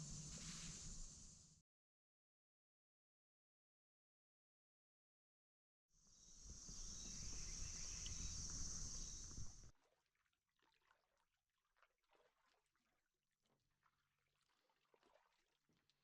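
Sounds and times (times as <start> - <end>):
faint scattered ticks: 6.4 - 9.7.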